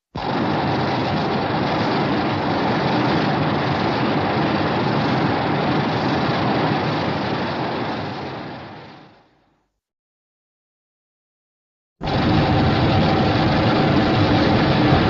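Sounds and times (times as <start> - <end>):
harsh monster rumbling: 12.0 - 15.0.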